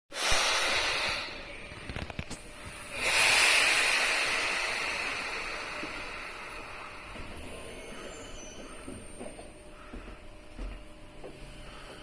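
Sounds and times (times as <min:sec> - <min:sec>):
compressed air hissing: 0:00.1 - 0:01.5, 0:02.7 - 0:08.8.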